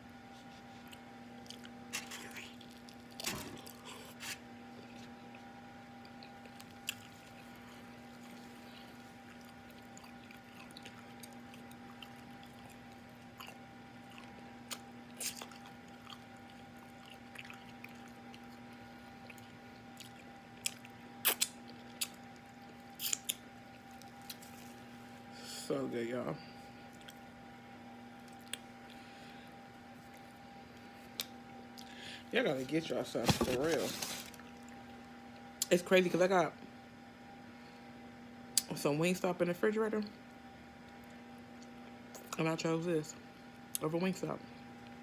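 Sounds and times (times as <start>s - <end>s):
faint steady hum: 0.0s - 45.0s
person chewing food: 0.4s - 24.8s, 26.9s - 27.3s.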